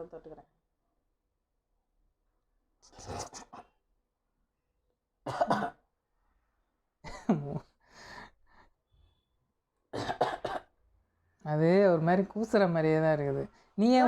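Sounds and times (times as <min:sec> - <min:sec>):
person coughing: 0:05.3 - 0:05.8, 0:10.0 - 0:10.7.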